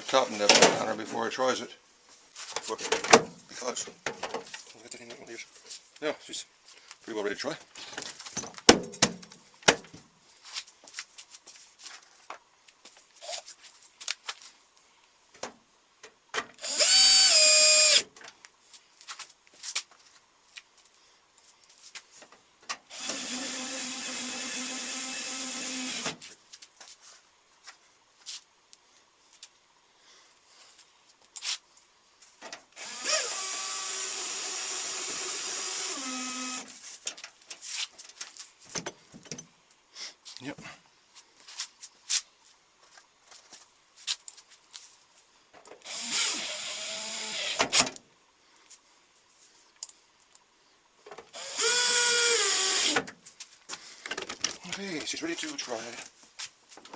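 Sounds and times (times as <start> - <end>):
power drill driving screws: 16.6 - 18.1, 22.9 - 26.2, 32.8 - 36.8, 45.8 - 48.0, 51.3 - 53.1.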